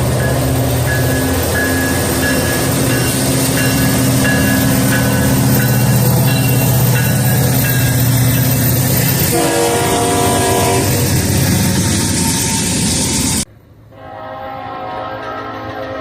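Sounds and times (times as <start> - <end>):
loud train noise: 0.0 - 16.0
deep locomotive horn chord: 9.3 - 11.1, 13.9 - 16.0.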